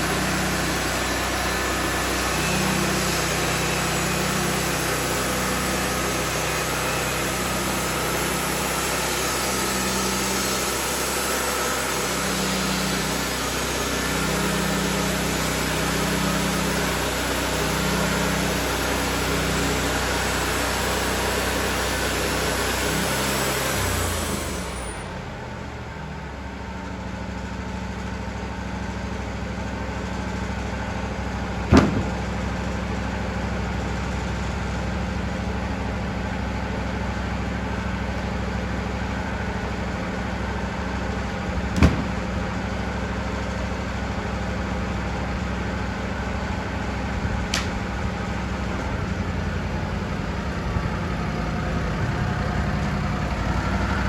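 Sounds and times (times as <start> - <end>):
sawmill engine running: 0.0 - 54.0
sharp knocks: 31.7 - 32.4, 41.8 - 42.5.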